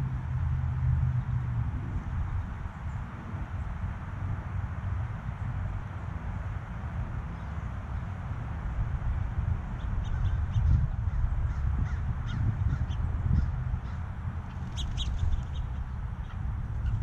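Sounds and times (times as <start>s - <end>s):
steady low rumble: 0.0s - 17.0s
birds chipping and calling: 9.8s - 17.0s.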